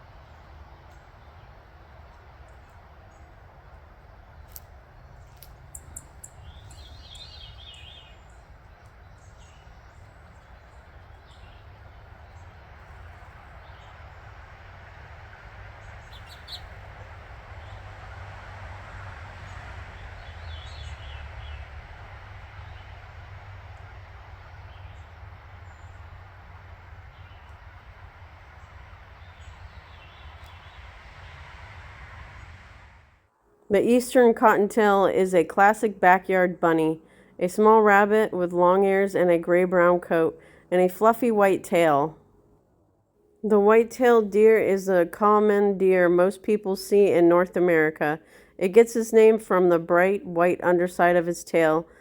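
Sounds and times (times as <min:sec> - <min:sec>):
birds chirping: 0:00.0 - 0:32.6
low rumble and hiss: 0:00.0 - 0:52.0.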